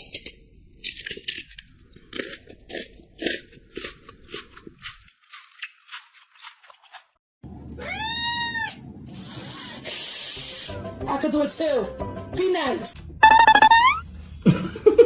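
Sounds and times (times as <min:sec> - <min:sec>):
crunchy chewing: 0:01.0 - 0:07.2.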